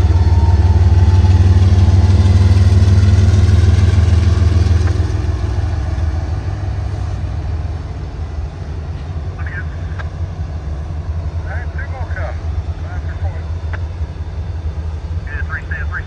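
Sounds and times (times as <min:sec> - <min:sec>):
locomotive engine droning: 0:00.0 - 0:16.0.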